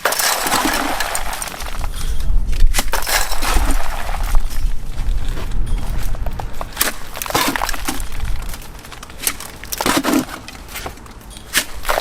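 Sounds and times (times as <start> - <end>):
crumbling pieces falling: 0.0 - 2.2, 6.6 - 12.0
cement render cracking and scraping: 0.0 - 12.0.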